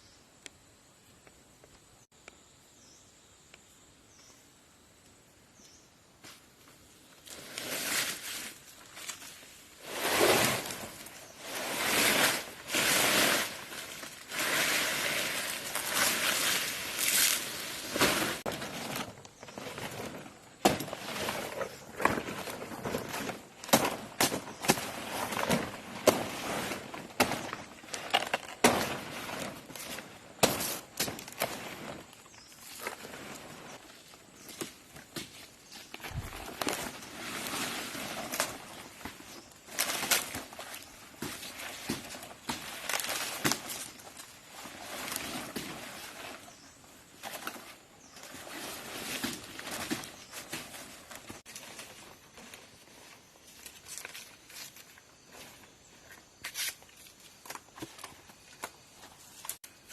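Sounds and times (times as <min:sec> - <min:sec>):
dry leaves rustling and crunching: 0:07.3 - 0:55.1.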